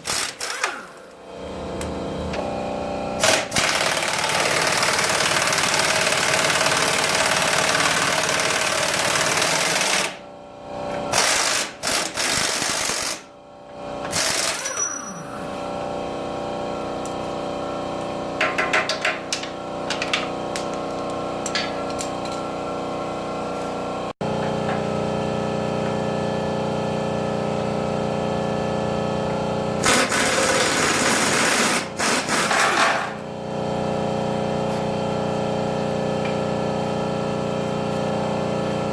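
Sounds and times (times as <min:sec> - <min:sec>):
pneumatic impact wrench hammering: 0:00.0 - 0:01.2, 0:03.2 - 0:10.2, 0:11.0 - 0:13.3, 0:14.0 - 0:15.2, 0:18.4 - 0:22.4, 0:29.8 - 0:33.3.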